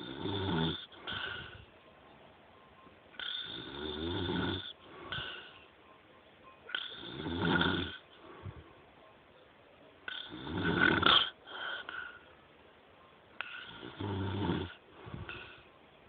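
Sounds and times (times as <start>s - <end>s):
loud rasping snoring: 0.0s - 1.6s, 3.2s - 5.3s, 6.7s - 8.0s, 10.1s - 11.4s, 13.4s - 15.4s
soft breathing: 0.8s - 1.9s, 4.7s - 6.0s, 8.0s - 9.1s, 11.4s - 12.6s, 13.4s - 14.0s, 14.7s - 15.9s.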